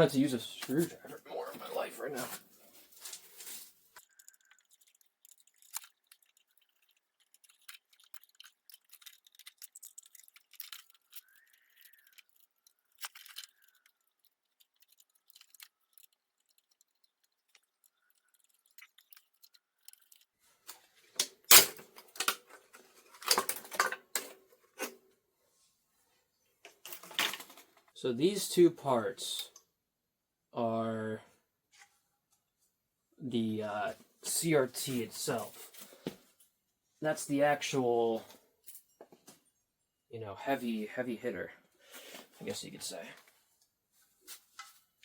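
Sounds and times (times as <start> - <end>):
hand tools clicking and scraping: 0.1 - 25.0
parts knocking and clattering: 18.4 - 25.0, 26.6 - 28.0.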